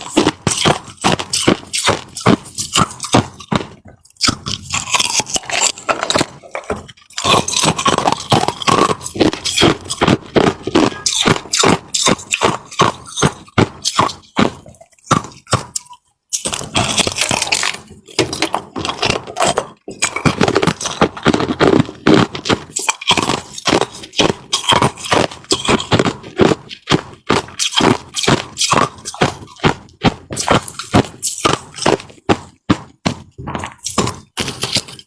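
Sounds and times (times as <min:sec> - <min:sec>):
ice being crunched: 0:00.0 - 0:14.5, 0:16.4 - 0:22.1, 0:22.7 - 0:26.6, 0:33.6 - 0:35.0.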